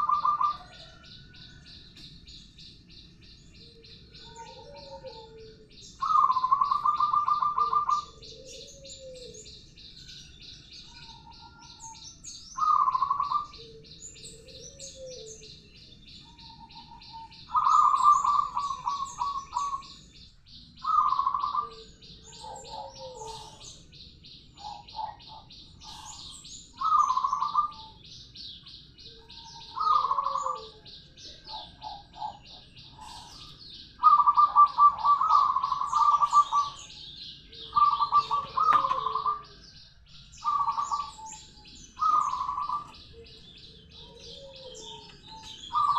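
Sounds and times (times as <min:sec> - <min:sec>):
dove cooing with rolling trills: 0:00.0 - 0:45.9
small birds chirping: 0:00.0 - 0:45.9.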